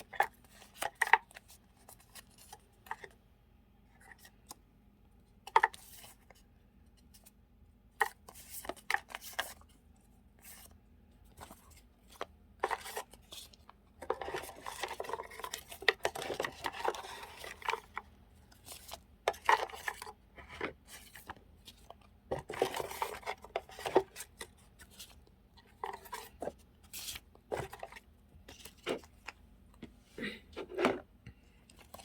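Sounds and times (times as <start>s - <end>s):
paper and plastic rustling: 10.4s - 29.4s.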